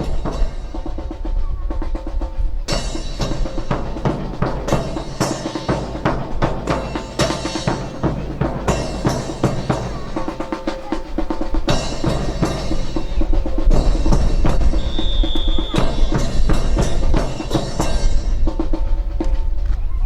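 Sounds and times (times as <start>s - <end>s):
marching drum cadence: 0.0s - 20.0s
high steady tone: 4.8s - 18.1s.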